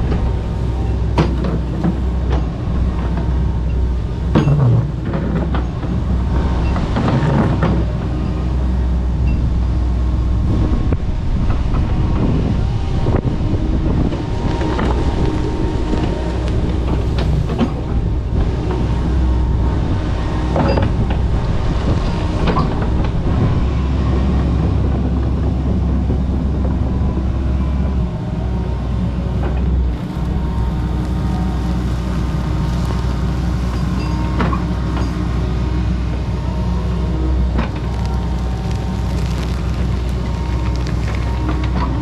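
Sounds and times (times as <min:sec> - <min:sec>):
excavator diesel engine running: 0:00.0 - 0:42.0.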